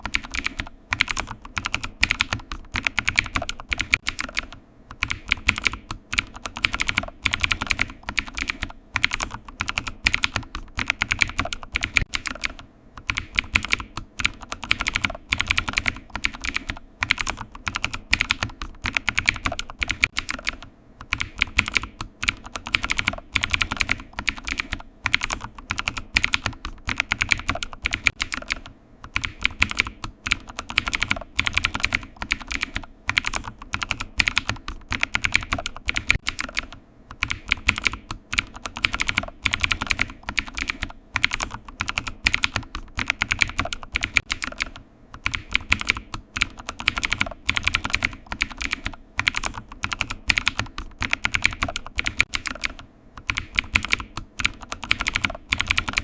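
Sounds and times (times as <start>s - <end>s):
typing on computer keyboard: 0.0s - 56.0s.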